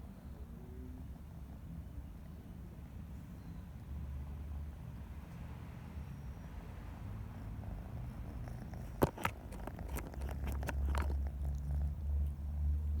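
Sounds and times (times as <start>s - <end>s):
cat purring: 7.0s - 13.0s.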